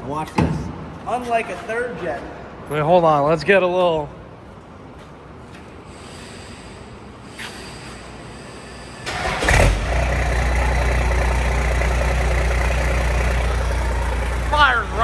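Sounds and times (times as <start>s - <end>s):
diesel engine cranking: 9.0s - 15.0s
diesel engine idling: 9.1s - 15.0s.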